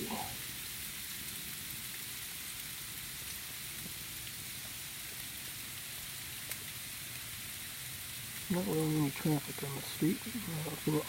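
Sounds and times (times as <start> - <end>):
freezing rain hissing: 0.0 - 11.0
faint ticks of ice: 6.4 - 6.8.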